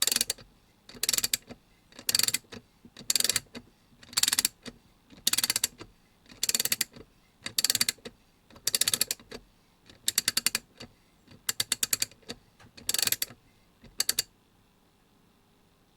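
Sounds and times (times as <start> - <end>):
ratchet clicking: 0.0 - 1.4, 2.0 - 2.4, 3.0 - 3.4, 5.2 - 6.9, 7.5 - 8.0, 10.0 - 10.6, 11.5 - 12.2, 12.8 - 13.3, 13.9 - 14.3.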